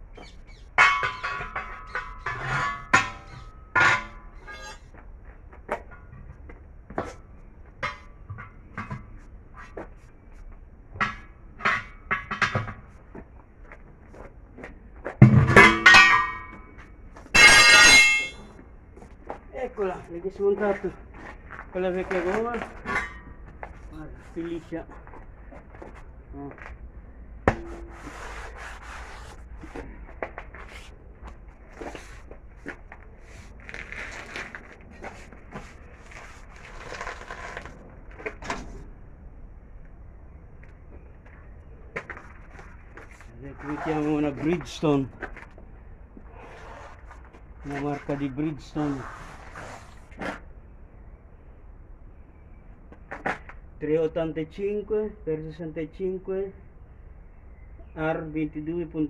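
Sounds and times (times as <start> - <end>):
metal tools clanking on wheel: 0.2 - 4.9, 11.0 - 12.9, 15.2 - 16.8, 17.4 - 18.5, 21.8 - 24.0.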